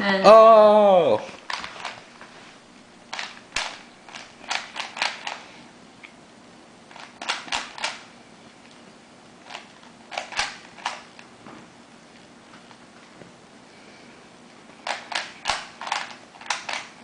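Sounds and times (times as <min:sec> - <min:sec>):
puzzle cube clicking: 0:03.1 - 0:05.4, 0:14.8 - 0:16.9.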